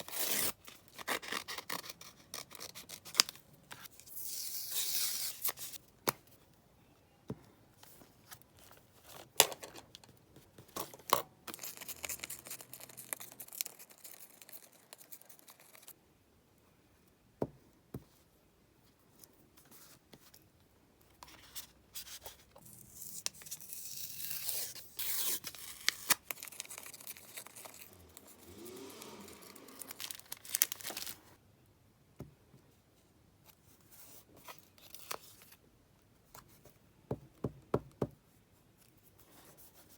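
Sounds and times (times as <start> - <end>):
paper tearing and rustling: 23.6 - 31.3.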